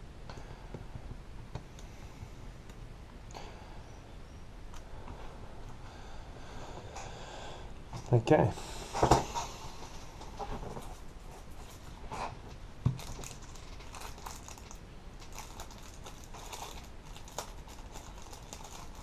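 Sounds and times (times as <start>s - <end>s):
packaging clicks and crinkling: 12.9s - 19.0s.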